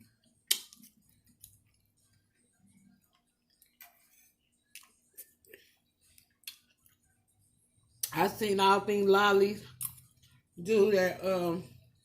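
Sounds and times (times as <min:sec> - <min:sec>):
person chewing: 0:00.1 - 0:02.4, 0:03.0 - 0:07.1, 0:09.7 - 0:10.4
mouth clicks and smacks: 0:06.2 - 0:07.0.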